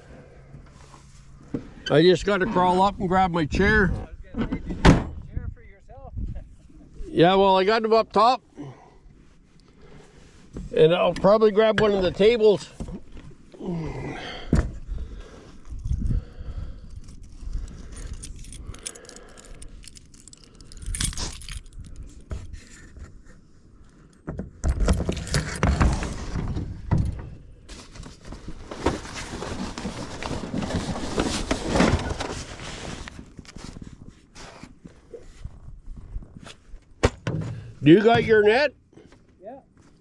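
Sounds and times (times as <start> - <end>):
metal gear jingling and clattering: 18.0 - 21.8.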